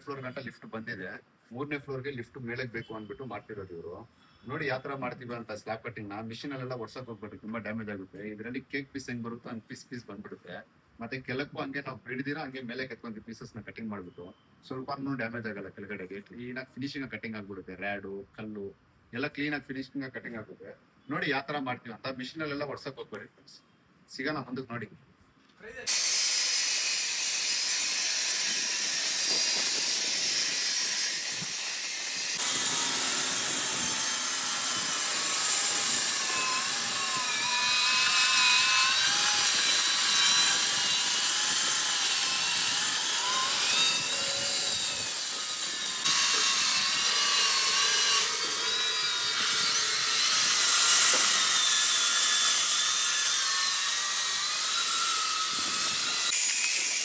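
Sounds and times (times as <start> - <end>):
concrete saw whining: 25.8 - 57.0.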